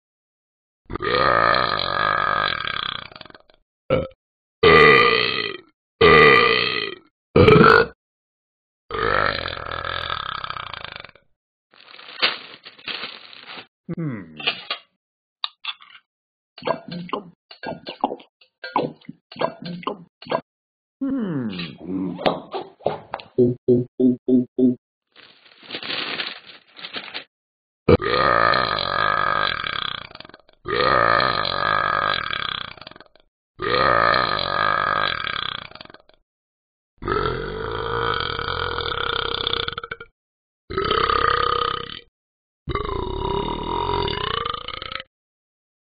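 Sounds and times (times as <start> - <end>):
person burping loudly: 0.9 - 8.0, 8.9 - 11.3, 27.9 - 36.2, 37.0 - 40.1, 40.7 - 42.1, 42.7 - 45.1.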